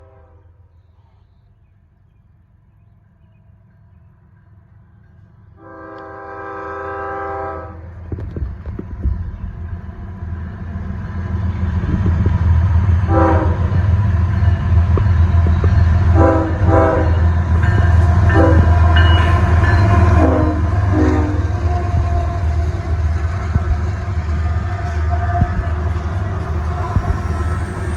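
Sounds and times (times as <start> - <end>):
locomotive horn blasts: 0.0 - 0.6, 5.6 - 7.9, 13.1 - 13.8, 16.1 - 22.6
diesel locomotive rumble: 0.0 - 27.9.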